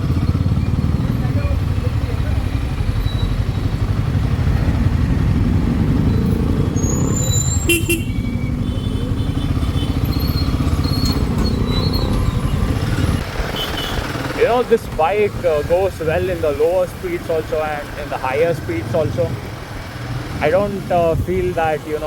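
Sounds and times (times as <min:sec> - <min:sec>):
motorcycle engine running: 0:00.0 - 0:22.0
wind rumbling on microphone: 0:20.5 - 0:21.9.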